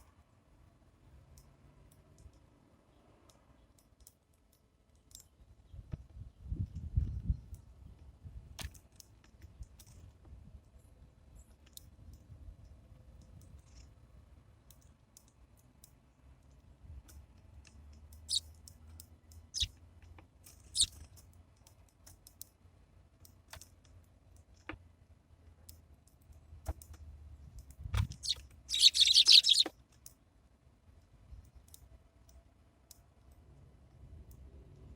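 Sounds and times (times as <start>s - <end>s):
bird feet on feeder: 19.5s - 19.7s, 20.7s - 21.1s, 28.0s - 29.7s
beaks pecking seed: 28.1s - 29.7s
short high chirps: 28.2s - 29.7s.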